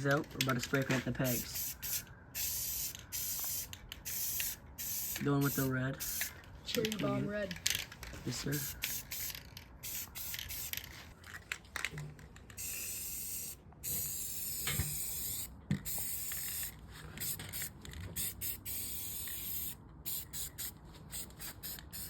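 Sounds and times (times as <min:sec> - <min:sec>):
spray paint can hissing: 0:01.2 - 0:06.3, 0:08.5 - 0:10.9, 0:12.6 - 0:22.0.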